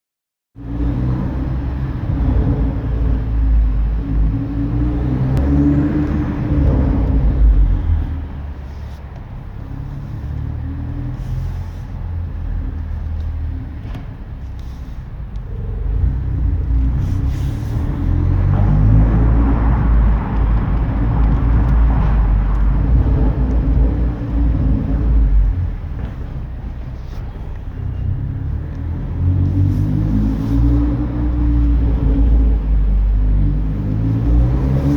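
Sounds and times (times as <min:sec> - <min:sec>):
car exhaust drone: 0:00.6 - 0:34.9
exhaust pops and crackles: 0:12.2 - 0:30.3.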